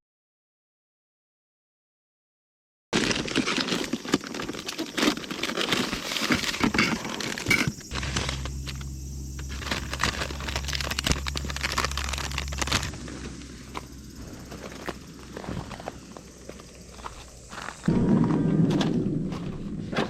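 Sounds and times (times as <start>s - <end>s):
packaging crinkling and rustling: 3.0s - 17.9s
steady low hum: 6.6s - 20.0s.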